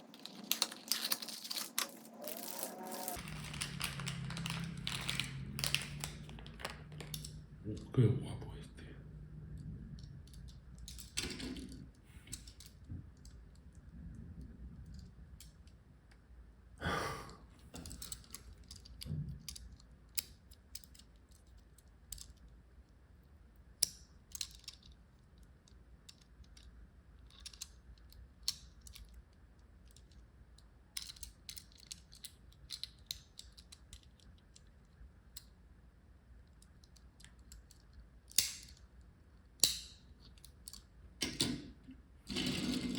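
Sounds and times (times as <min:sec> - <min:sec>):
packaging rustling: 0:00.0 - 0:07.2.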